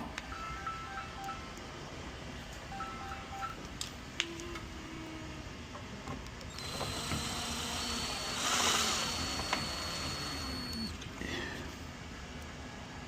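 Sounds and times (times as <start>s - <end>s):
power drill whining: 6.5s - 11.0s.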